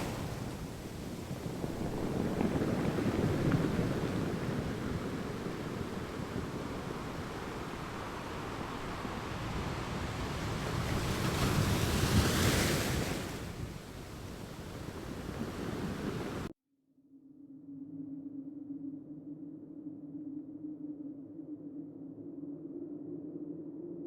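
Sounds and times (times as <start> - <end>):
ocean waves breaking: 0.0 - 16.5.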